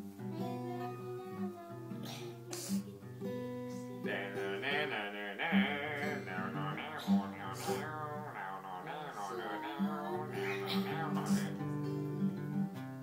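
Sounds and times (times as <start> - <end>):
acoustic guitar: 0.0 - 13.0
person singing: 0.2 - 12.4.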